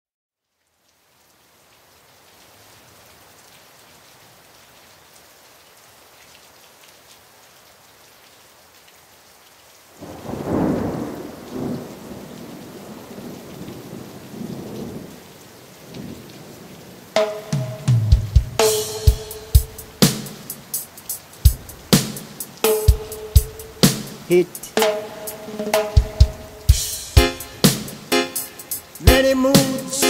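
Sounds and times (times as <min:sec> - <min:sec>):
steady rain falling: 0:00.3 - 0:30.0
rumbling thunderclap: 0:10.0 - 0:15.1.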